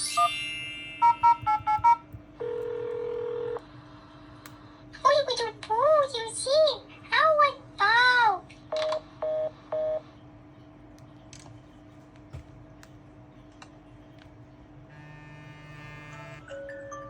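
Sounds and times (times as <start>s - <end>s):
steady buzzing tone: 14.9s - 16.5s.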